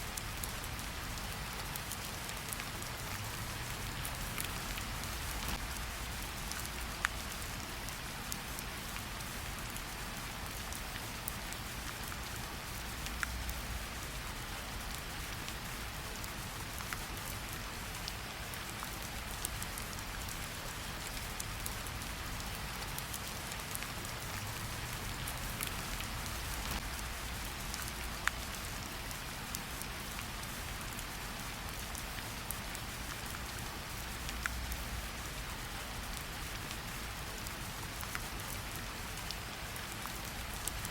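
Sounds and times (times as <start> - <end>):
steady rain falling: 0.0 - 40.9
raindrops landing close by: 1.7 - 7.4, 21.0 - 29.2.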